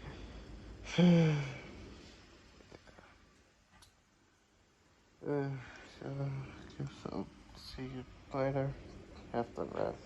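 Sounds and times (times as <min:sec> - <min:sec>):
person sighing: 0:00.8 - 0:01.7.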